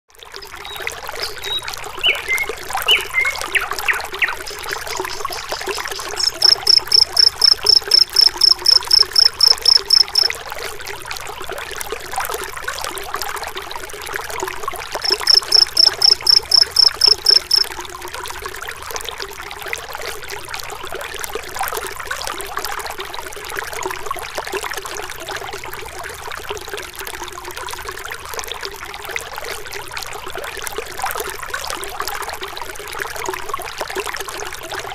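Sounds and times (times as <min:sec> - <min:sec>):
high-pitched pulsing call: 0:06.2 - 0:10.3, 0:15.0 - 0:17.7.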